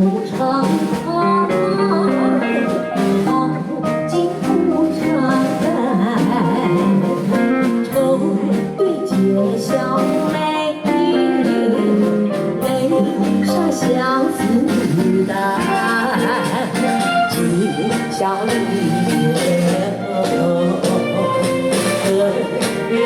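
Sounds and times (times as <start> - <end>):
guitar accompaniment: 0.0 - 23.0
person singing: 0.0 - 23.0.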